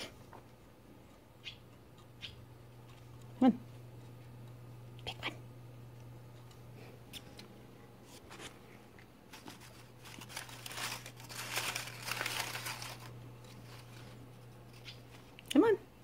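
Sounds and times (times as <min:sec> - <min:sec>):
paper crinkling and rustling: 0:09.3 - 0:15.3.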